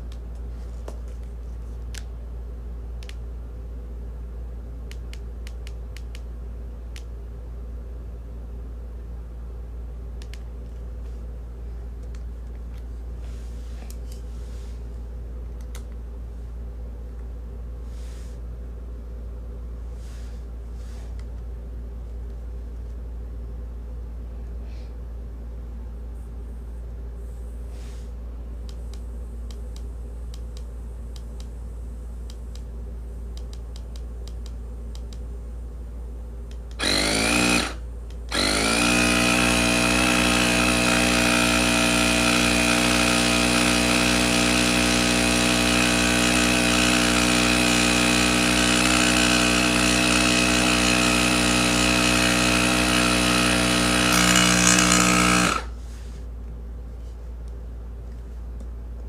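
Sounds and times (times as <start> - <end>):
tire inflator compressor whining: 36.8 - 55.8.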